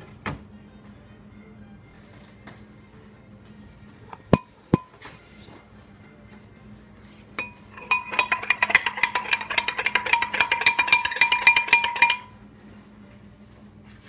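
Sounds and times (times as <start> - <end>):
cup ringing: 4.1 - 5.0, 7.4 - 12.4
spoon stirring and clinking in cup: 4.1 - 5.0, 7.4 - 12.3.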